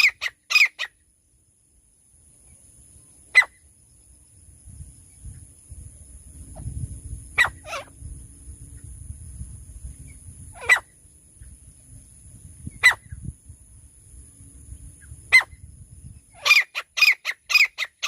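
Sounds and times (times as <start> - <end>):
francolin calling: 0.0 - 1.1, 2.4 - 3.9, 6.5 - 8.1, 10.0 - 11.8, 12.6 - 13.3, 14.7 - 18.0.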